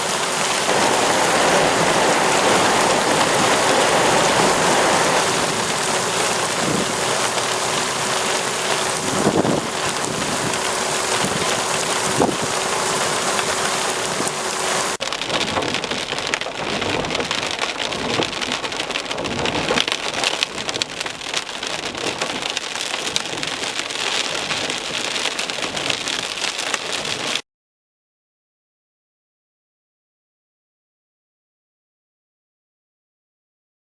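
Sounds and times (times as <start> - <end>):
heavy rain pattering: 0.0 - 27.4
steady hum: 0.7 - 15.0.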